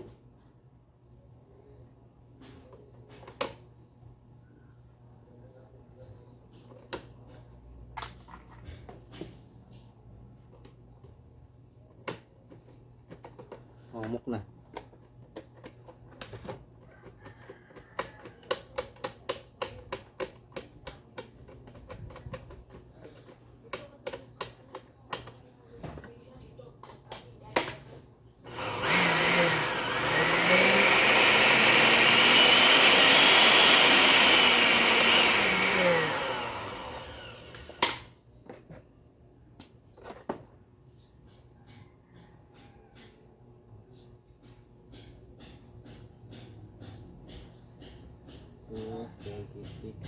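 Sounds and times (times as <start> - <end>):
blender clicks and handling: 28.5 - 38.1
blender motor whine: 28.5 - 38.1.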